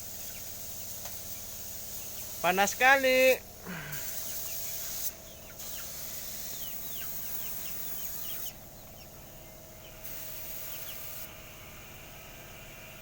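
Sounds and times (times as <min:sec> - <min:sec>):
paint spraying in hissing bursts: 0:00.0 - 0:08.4, 0:10.0 - 0:11.3
small birds chirping: 0:00.0 - 0:11.8
faint steady hum: 0:00.0 - 0:13.0.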